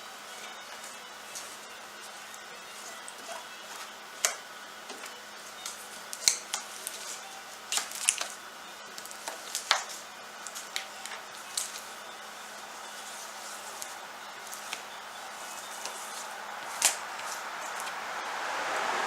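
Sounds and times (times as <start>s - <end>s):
faint background hum: 0.0s - 18.4s
hands tapping and scraping fabric: 15.6s - 17.9s.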